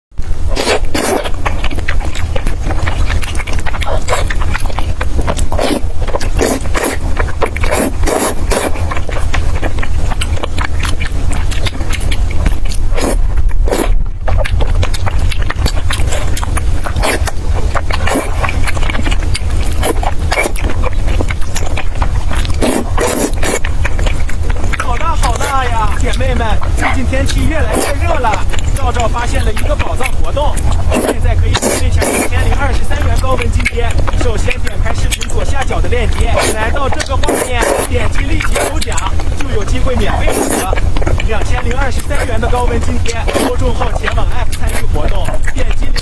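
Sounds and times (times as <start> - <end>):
person slurping and chewing noodles: 0.2 - 46.0
steady low hum: 0.2 - 46.0.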